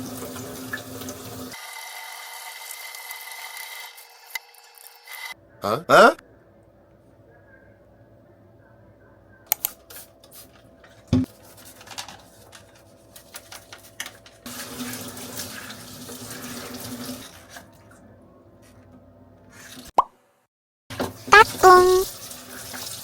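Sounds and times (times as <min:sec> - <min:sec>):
tap water running into sink: 0:00.0 - 0:01.6, 0:14.5 - 0:17.7, 0:20.9 - 0:23.0.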